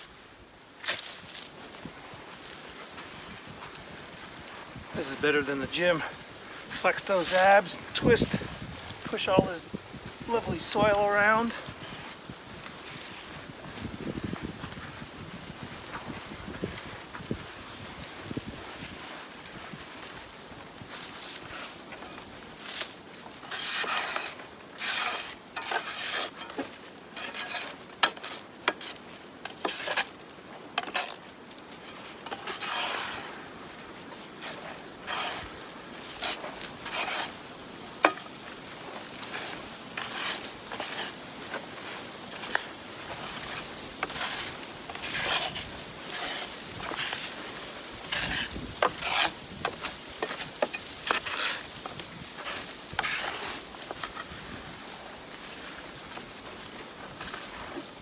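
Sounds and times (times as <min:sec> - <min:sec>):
soil scraping across screen: 0:00.8 - 0:58.0.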